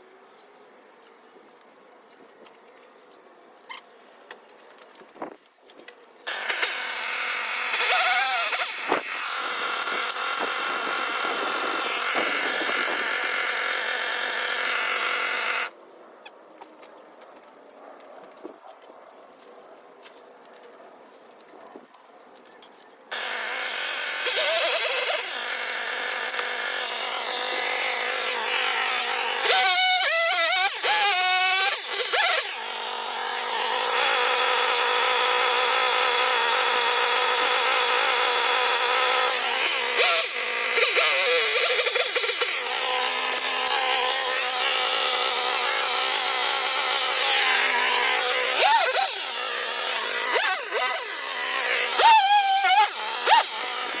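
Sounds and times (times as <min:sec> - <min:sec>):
chainsaw buzzing: 0:06.2 - 0:15.8, 0:23.1 - 0:54.0.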